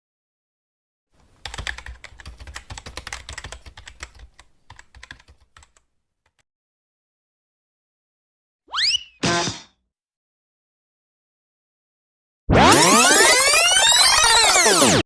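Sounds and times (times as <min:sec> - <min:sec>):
computer keyboard typing: 0:01.2 - 0:06.4.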